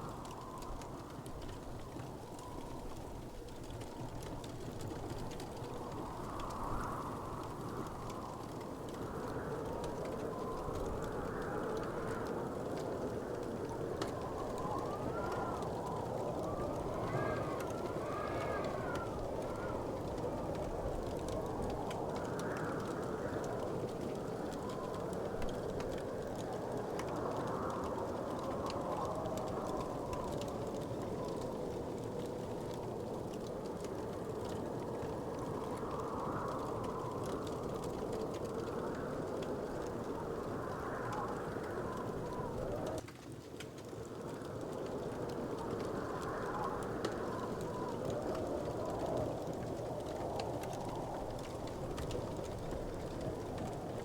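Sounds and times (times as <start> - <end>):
wood fire crackling and popping: 0.0 - 54.0
faint whistling tone: 5.6 - 26.5.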